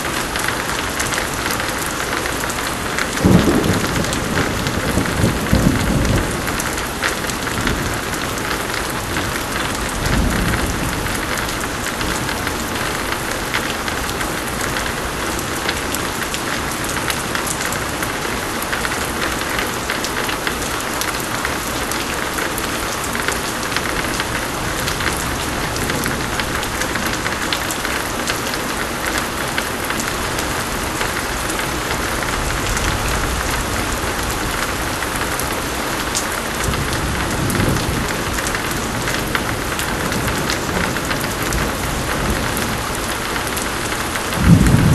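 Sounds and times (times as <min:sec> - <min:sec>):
pouring rain: 0:00.0 - 0:44.9
thunder rumble: 0:03.1 - 0:14.2, 0:36.5 - 0:44.9.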